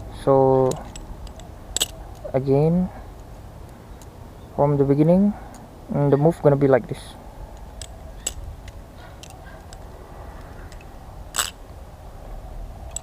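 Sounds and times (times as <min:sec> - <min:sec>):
butterfly knife handles clicking: 0:00.6 - 0:02.3, 0:07.5 - 0:11.8.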